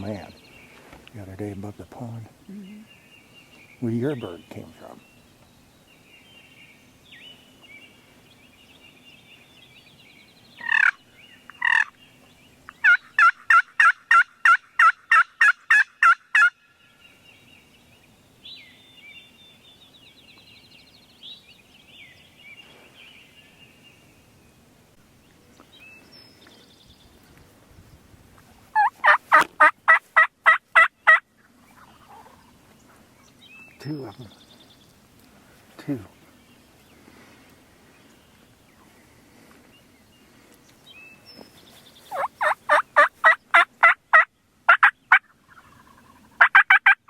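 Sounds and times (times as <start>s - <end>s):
songbirds singing faintly: 0.0s - 47.0s
turkey yelping: 10.6s - 11.0s, 12.8s - 16.6s, 28.8s - 31.2s, 31.8s - 32.6s, 42.1s - 47.0s.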